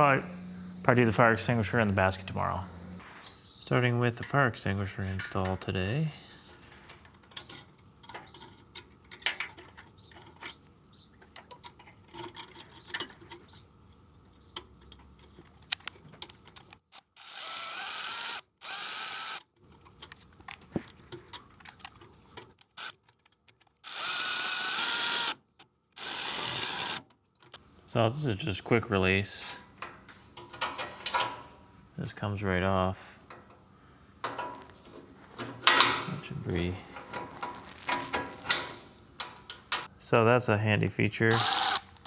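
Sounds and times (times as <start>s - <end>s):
clicks and knocks of handled parts: 6.2s - 17.0s, 19.6s - 23.8s, 29.5s - 31.6s, 34.2s - 36.2s, 36.8s - 39.9s
power drill bursts: 17.2s - 19.4s, 23.8s - 25.4s, 26.0s - 27.0s, 41.3s - 42.0s.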